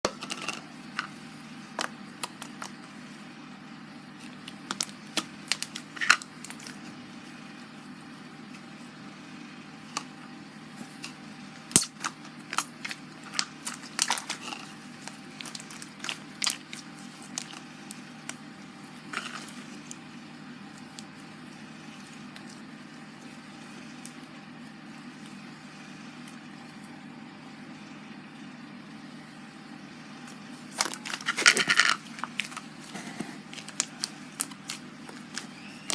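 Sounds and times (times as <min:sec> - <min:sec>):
steady low hum: 0:00.0 - 0:35.9
slime squishing with sticky pops: 0:01.8 - 0:02.8, 0:10.9 - 0:20.0, 0:30.3 - 0:35.9.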